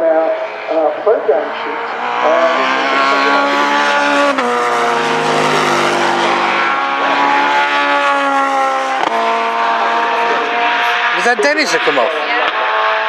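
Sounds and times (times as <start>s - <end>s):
racing car engines at high revs: 0.0s - 13.0s.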